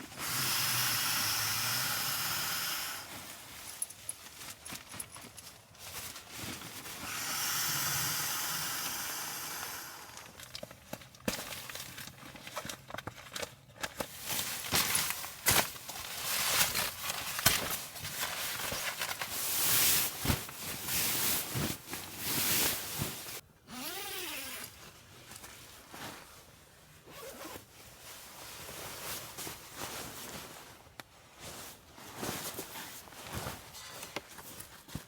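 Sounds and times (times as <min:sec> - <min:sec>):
zipper pulled open and shut: 0:23.7 - 0:24.8, 0:27.1 - 0:27.7.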